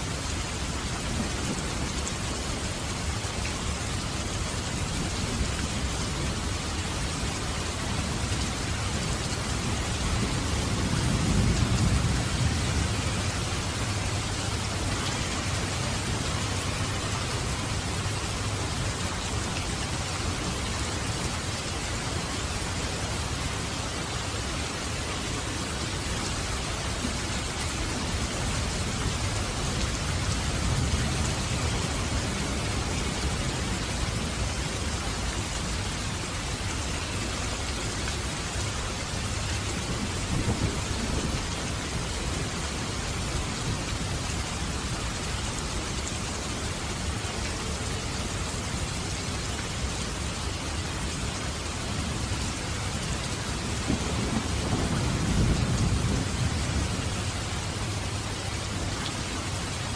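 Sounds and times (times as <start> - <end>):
heavy rain: 0.0 - 59.9
low rolling thunder: 8.6 - 17.9, 39.8 - 42.0, 53.5 - 57.2.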